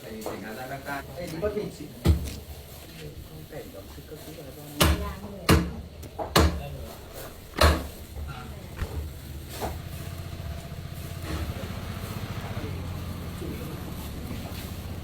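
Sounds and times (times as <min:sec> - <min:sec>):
sharp knock: 0:07.6 - 0:08.0
small engine running: 0:08.8 - 0:15.0.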